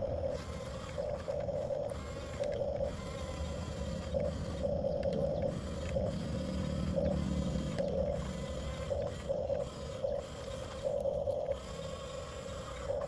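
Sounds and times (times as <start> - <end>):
toy gear motors whining: 0.0 - 13.0.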